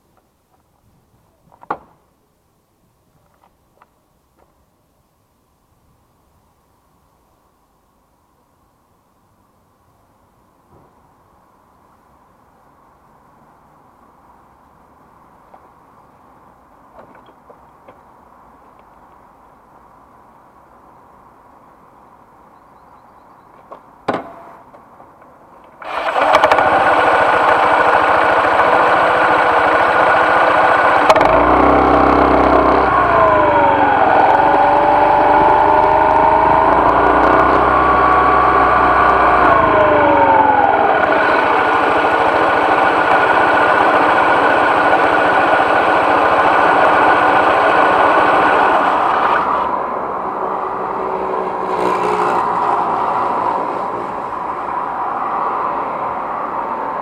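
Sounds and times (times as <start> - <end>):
scooter engine starting and revving: 25.8 - 55.7.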